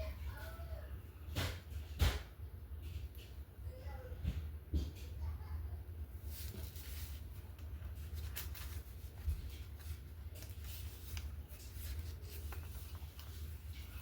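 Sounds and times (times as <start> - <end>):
paper rustling: 6.2 - 14.0.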